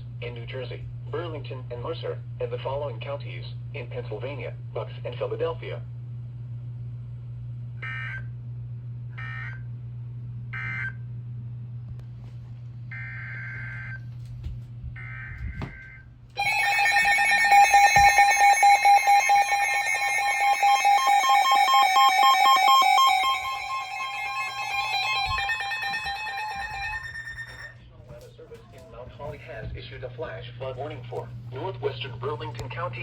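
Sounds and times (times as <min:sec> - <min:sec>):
warbling digital data bursts: 0:16.4 - 0:27.7
two-tone alert signal: 0:16.4 - 0:27.8.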